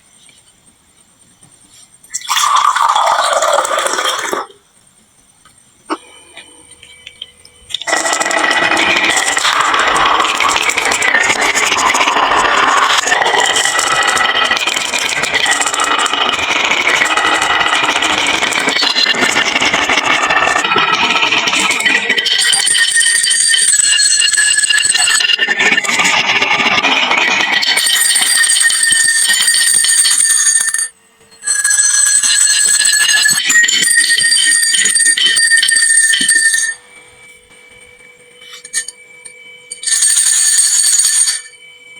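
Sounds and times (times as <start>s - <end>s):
bright ringing tones: 5.9s - 41.9s
marbles rolling down wooden run: 7.8s - 30.9s, 31.5s - 36.8s.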